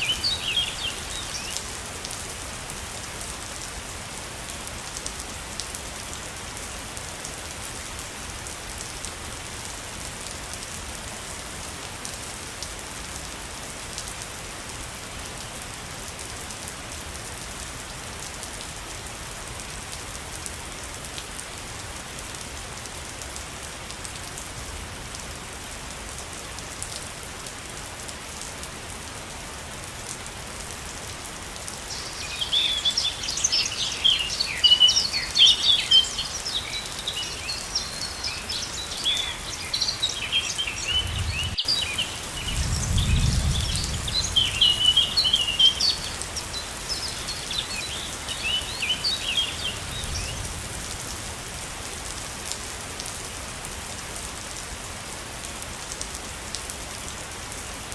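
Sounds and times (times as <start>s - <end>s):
small bird chirping: 0.0s - 1.6s, 31.9s - 50.4s
waterfall rushing: 0.0s - 1.8s, 31.8s - 42.8s, 43.6s - 50.4s.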